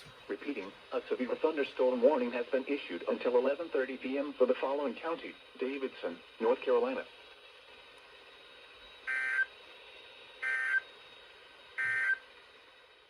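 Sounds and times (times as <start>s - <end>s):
faint hiss: 0.0s - 13.0s
warbling digital data tones: 9.1s - 9.5s, 10.4s - 10.8s.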